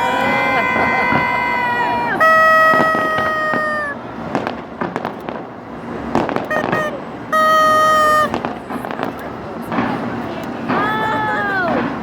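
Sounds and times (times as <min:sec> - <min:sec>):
horn blasts: 0:00.0 - 0:04.0, 0:06.5 - 0:08.5
fireworks bursting and crackling: 0:00.0 - 0:12.0
sharp firework bangs: 0:02.4 - 0:07.0.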